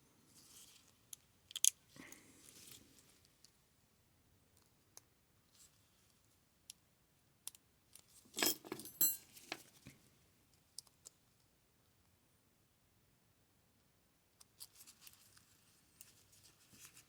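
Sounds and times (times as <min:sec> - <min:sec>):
metal scraping and clinking: 0:08.3 - 0:09.6.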